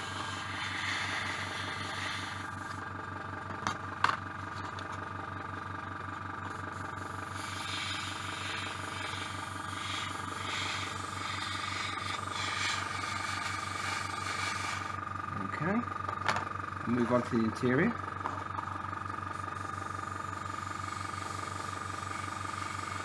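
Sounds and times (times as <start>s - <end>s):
airbrush spraying hiss: 0.0s - 2.6s, 7.0s - 15.0s, 19.4s - 23.0s
airbrush compressor pulsing hum: 0.0s - 3.6s, 4.3s - 23.0s.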